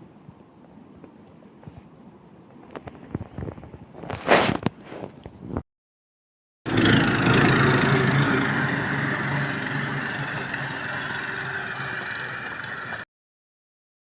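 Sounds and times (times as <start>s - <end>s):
engine running: 6.7s - 13.1s.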